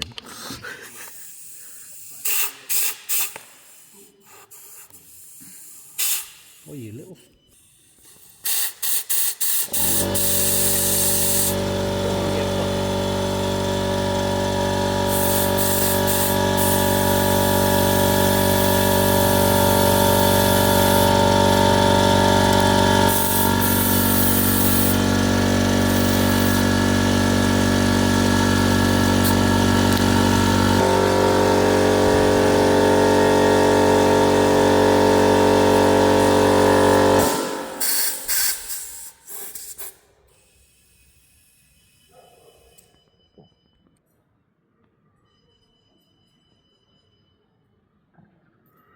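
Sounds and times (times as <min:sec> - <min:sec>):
air compressor motor running: 0:07.5 - 0:42.0.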